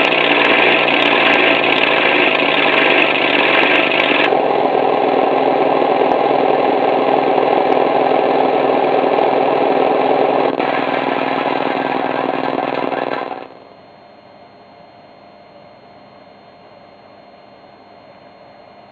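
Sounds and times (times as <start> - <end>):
engine running: 0.0 - 13.5.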